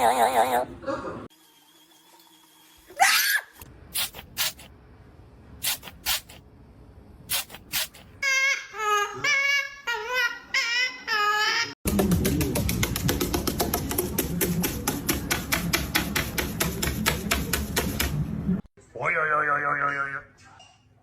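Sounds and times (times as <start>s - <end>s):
parrot squawking: 7.8s - 11.8s
parrot wailing cries: 8.2s - 11.8s.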